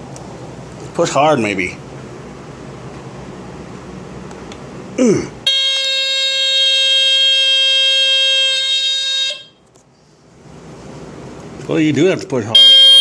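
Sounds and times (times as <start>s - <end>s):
smoke alarm horn steady tone: 5.5s - 9.6s, 12.6s - 13.0s.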